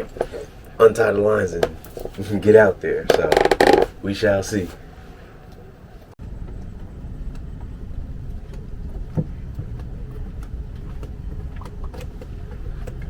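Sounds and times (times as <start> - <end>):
engine rumbling: 0.0 - 13.0
sharp knock: 3.1 - 3.9.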